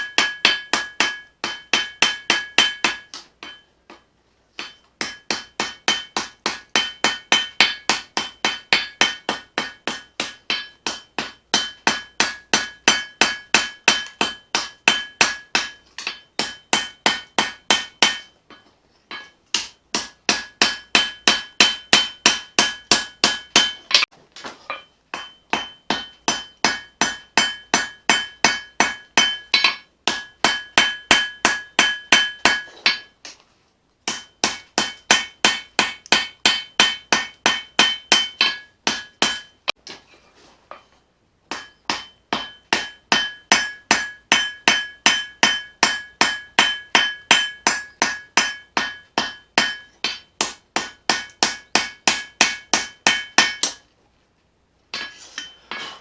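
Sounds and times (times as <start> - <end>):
hammer striking steel on anvil: 0.0 - 33.4, 34.0 - 40.0, 41.5 - 53.8, 54.9 - 56.0
anvil ringing: 4.6 - 24.1, 24.7 - 33.2, 34.1 - 39.7, 41.5 - 53.8.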